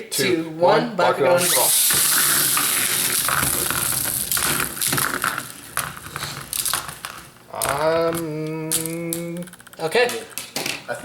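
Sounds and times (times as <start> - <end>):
toy balls rolling with hissing whir: 1.4 - 10.8
plastic toys clacking together: 2.0 - 10.9.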